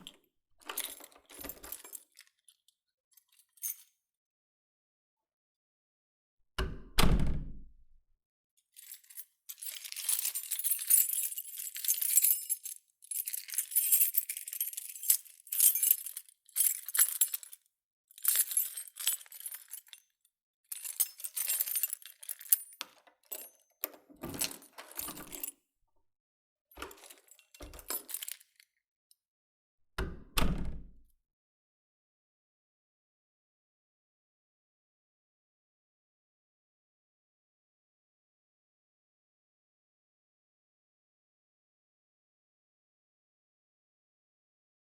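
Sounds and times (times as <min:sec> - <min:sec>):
keys jangling: 0:00.0 - 0:02.6, 0:03.2 - 0:03.9, 0:08.8 - 0:17.6, 0:18.2 - 0:20.1, 0:20.7 - 0:25.6, 0:26.8 - 0:28.6
door lock clunk: 0:06.6 - 0:07.6, 0:30.0 - 0:31.0
door lock clicks and knocks: 0:06.6 - 0:07.9, 0:26.8 - 0:28.1, 0:30.0 - 0:31.0.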